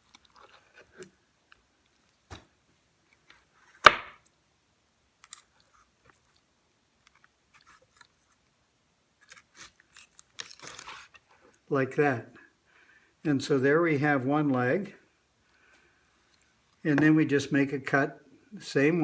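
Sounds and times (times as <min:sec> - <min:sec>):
knife crunching through chicken joint: 0:00.0 - 0:01.1, 0:07.1 - 0:08.4, 0:09.2 - 0:11.2.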